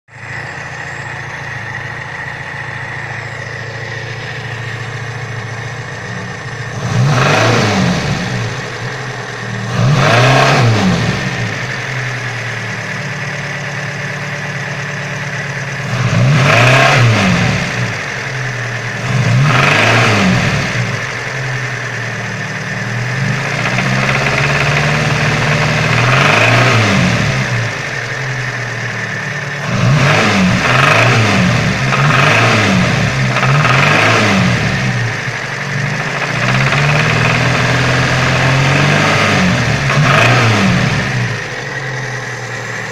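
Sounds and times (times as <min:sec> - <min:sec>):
car engine idling and revving: 0:00.0 - 0:42.9
engine knock: 0:11.0 - 0:42.9.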